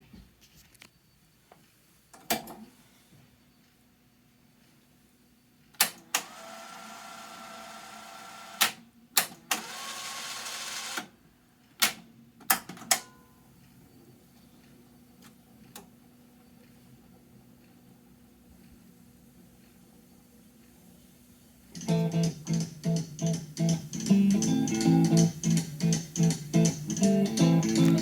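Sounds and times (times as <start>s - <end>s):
tape transport whirring: 5.8s - 8.8s, 9.5s - 11.1s, 21.7s - 28.0s.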